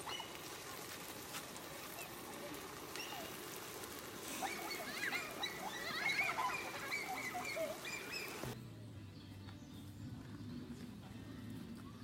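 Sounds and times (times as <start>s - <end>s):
high wavering animal calls: 4.2s - 8.6s.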